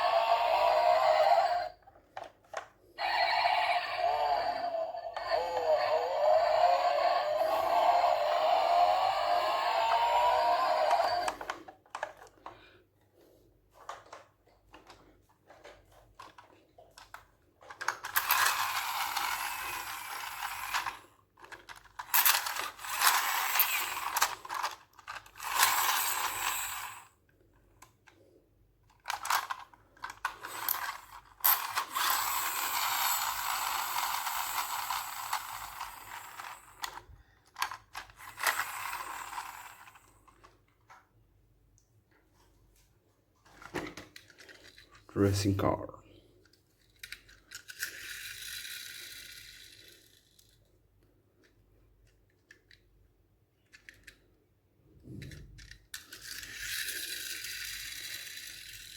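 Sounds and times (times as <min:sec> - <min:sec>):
toy car gearbox whirring: 0:00.0 - 0:12.5, 0:13.8 - 0:27.2, 0:28.8 - 0:40.6, 0:46.8 - 0:50.7, 0:53.7 - 0:54.2, 0:55.1 - 0:58.9.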